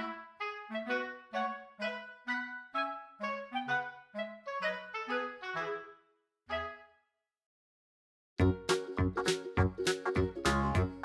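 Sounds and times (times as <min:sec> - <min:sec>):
simple melody of single notes: 0:08.4 - 0:11.0.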